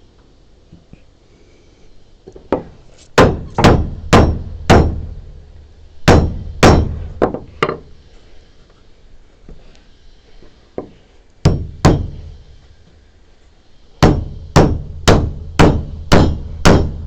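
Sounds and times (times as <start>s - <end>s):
hammer striking wood: 2.5s - 5.2s, 6.0s - 7.9s, 10.8s - 12.3s, 14.0s - 17.0s.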